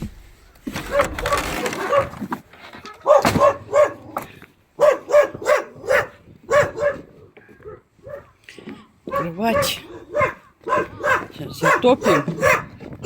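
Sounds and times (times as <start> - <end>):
dog barking: 0.8 - 2.3, 3.0 - 4.2, 4.8 - 8.4, 9.1 - 12.8.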